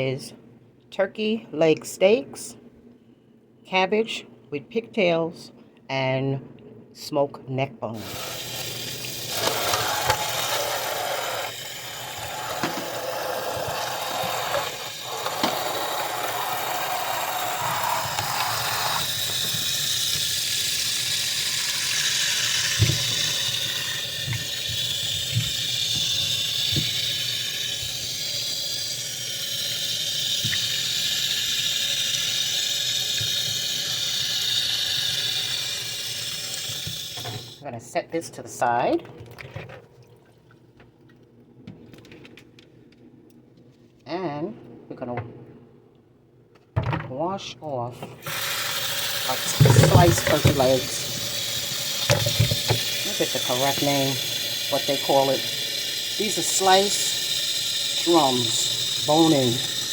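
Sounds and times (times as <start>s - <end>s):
tap water running into sink: 8.0s - 37.6s, 48.2s - 59.9s.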